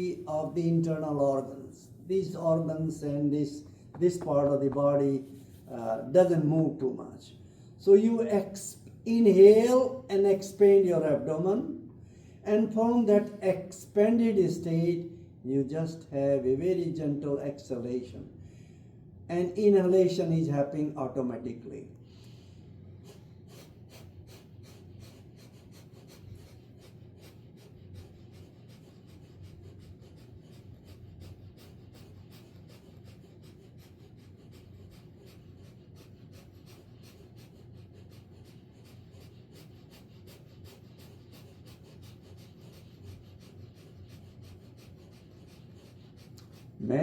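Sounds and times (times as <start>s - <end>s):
quick puffs of breath: 22.0s - 46.8s.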